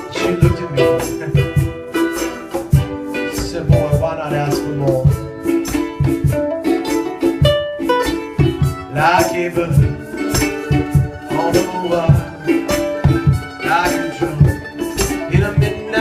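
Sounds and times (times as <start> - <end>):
plucked strings: 0.0 - 16.0
sliding melody line: 0.0 - 16.0
steady low beat: 0.0 - 16.0.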